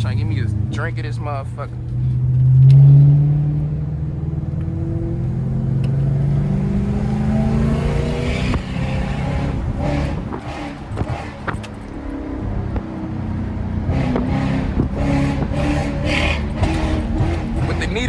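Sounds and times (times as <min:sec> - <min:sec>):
car engine accelerating: 0:00.0 - 0:18.0
gear change: 0:04.5 - 0:18.0.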